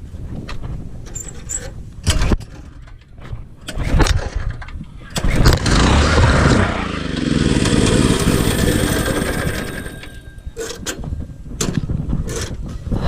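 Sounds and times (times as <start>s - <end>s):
go-kart engine running: 5.2s - 10.4s.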